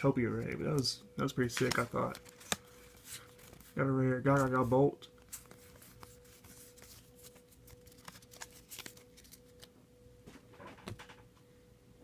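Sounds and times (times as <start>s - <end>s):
cards and foil pack rustling: 0.0s - 9.8s
faint steady hum: 0.0s - 12.0s.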